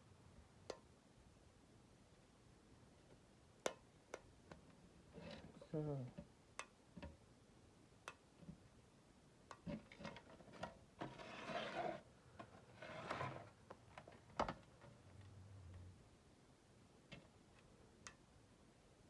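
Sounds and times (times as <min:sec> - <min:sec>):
scraping rubs: 0:11.0 - 0:12.0, 0:12.6 - 0:13.5.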